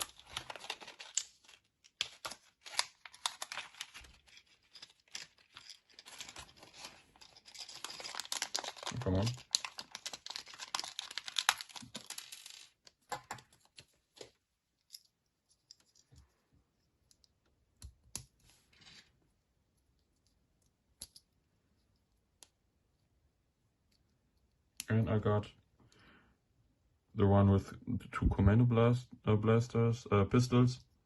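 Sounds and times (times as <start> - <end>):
plastic packaging crinkling and tearing: 0.0 - 12.6
small plastic parts clicking: 0.0 - 13.9, 19.8 - 23.1.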